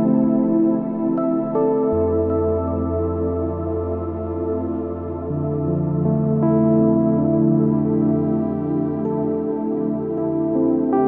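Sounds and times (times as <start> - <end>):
ambient music sustained tones: 0.0 - 11.0.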